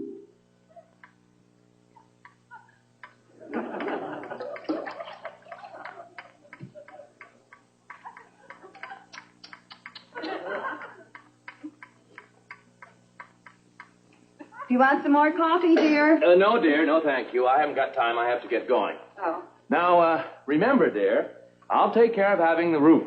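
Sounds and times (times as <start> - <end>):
studio audience laughter: 2.0 - 9.4, 10.2 - 11.3.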